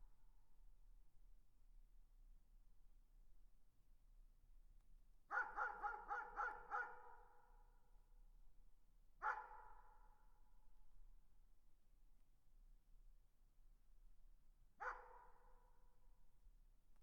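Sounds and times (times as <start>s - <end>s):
distant dog barking: 5.3s - 7.1s, 9.2s - 9.6s, 14.8s - 15.3s.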